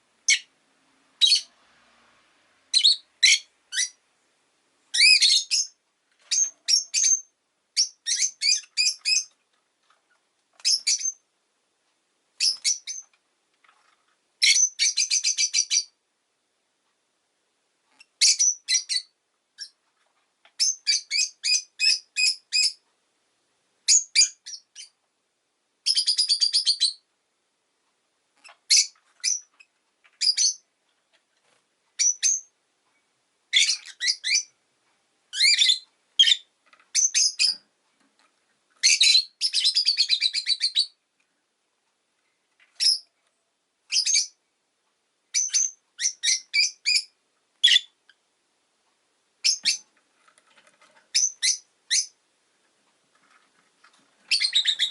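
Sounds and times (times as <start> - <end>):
lovebird chirping: 0.2 - 0.5, 1.2 - 1.6, 2.7 - 4.0, 4.9 - 9.4, 10.6 - 11.2, 12.4 - 13.1, 14.4 - 16.0, 17.9 - 19.8, 20.6 - 22.8, 23.9 - 25.0, 25.8 - 27.1, 28.4 - 30.7, 32.0 - 32.6, 33.5 - 34.6, 35.3 - 37.6, 38.8 - 41.0, 42.8 - 43.2, 43.9 - 44.4, 45.3 - 48.0, 49.4 - 49.9, 51.1 - 52.2, 54.3 - 54.9.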